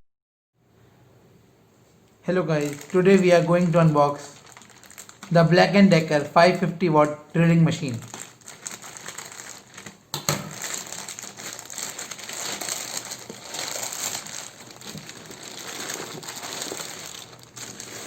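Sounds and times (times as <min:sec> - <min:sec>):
packaging crinkling and rustling: 0:02.5 - 0:06.3, 0:07.7 - 0:18.0.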